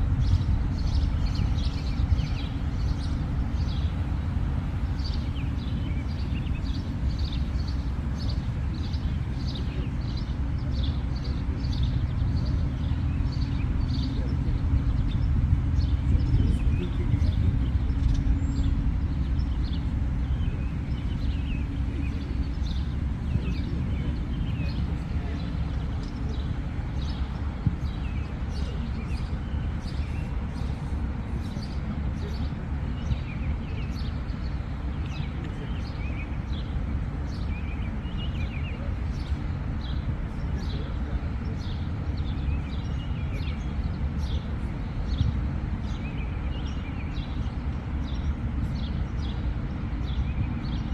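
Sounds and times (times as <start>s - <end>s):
low rumble: 0.0s - 33.6s
birds chirping: 0.0s - 50.9s.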